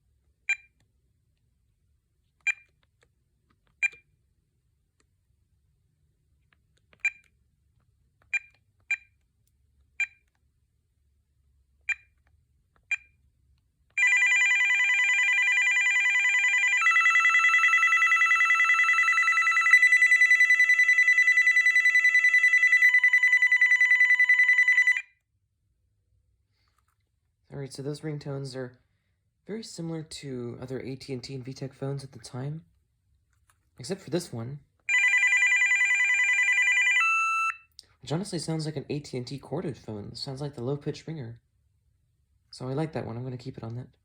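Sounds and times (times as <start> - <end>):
phone keypad beeps: 2.5 - 2.7, 3.8 - 4.1
electronic phone ringtones: 14.0 - 25.1, 34.9 - 37.6.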